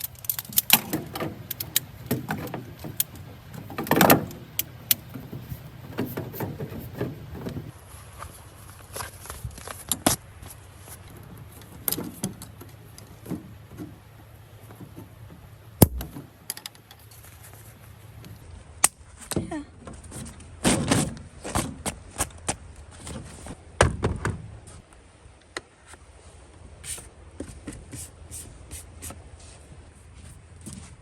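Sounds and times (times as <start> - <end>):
handling clicks and clatter: 0.0 - 7.7
sharp knocks: 15.8 - 16.3.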